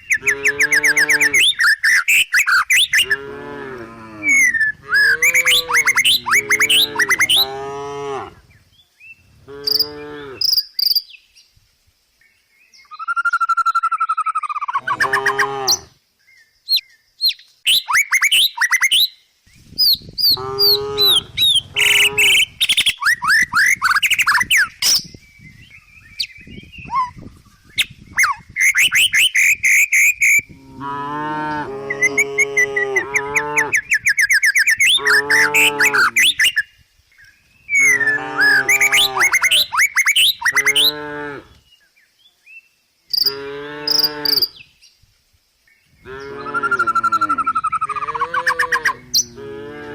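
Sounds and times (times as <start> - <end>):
birds chirping: 0.0 - 11.4, 19.6 - 30.5, 31.3 - 41.1, 45.7 - 49.9
cows mooing: 0.2 - 1.6, 3.0 - 8.4, 9.4 - 10.4, 14.8 - 15.9, 20.3 - 22.5, 30.5 - 33.8, 35.0 - 36.2, 37.8 - 39.7, 40.6 - 41.5, 43.3 - 44.4, 46.1 - 49.9.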